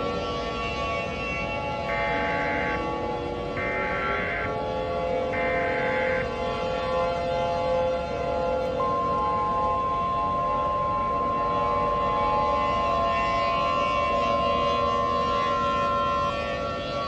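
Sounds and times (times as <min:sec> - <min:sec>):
outdoor warning siren steady tone: 0:00.0 - 0:17.0.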